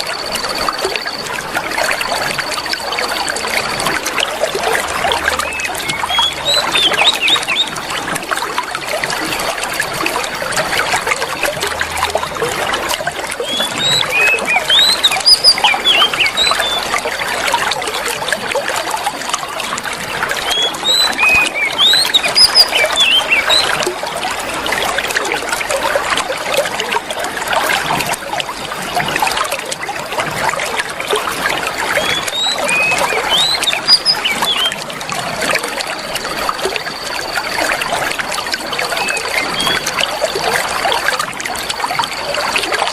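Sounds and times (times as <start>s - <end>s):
water trickling: 0.0s - 42.9s
whistled songbird notes: 4.8s - 7.8s, 13.4s - 17.3s, 20.4s - 23.8s, 31.9s - 34.8s, 38.7s - 39.9s.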